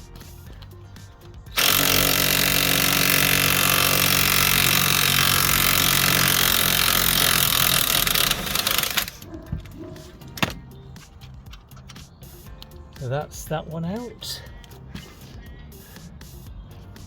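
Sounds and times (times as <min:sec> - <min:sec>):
impact wrench running: 0:01.5 - 0:09.2.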